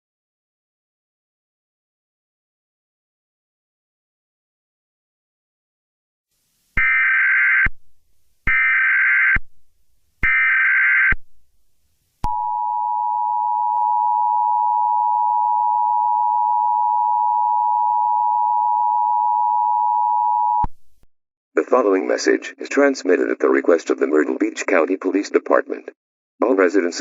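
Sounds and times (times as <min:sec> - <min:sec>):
two-tone alert signal: 0:12.3 - 0:20.7.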